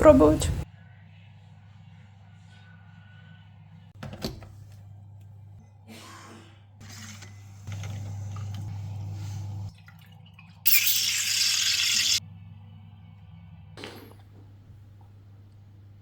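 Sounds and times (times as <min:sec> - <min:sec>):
espresso machine humming: 0:07.5 - 0:09.7.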